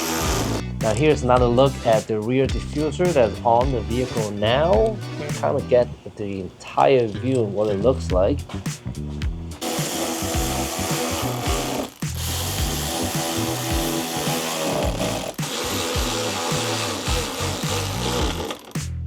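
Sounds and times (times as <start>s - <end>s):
power tool running: 0.0s - 1.0s, 9.6s - 18.9s
background music with bass beat: 0.0s - 5.9s, 8.0s - 19.0s.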